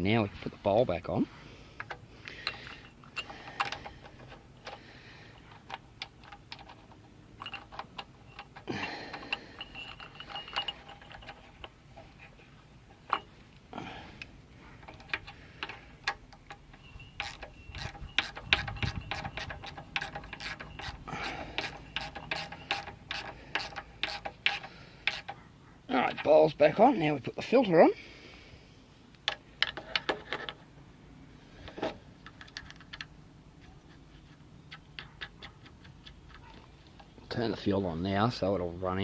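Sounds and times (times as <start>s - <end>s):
hand tools clicking on metal parts: 1.8s - 13.4s, 14.2s - 25.4s.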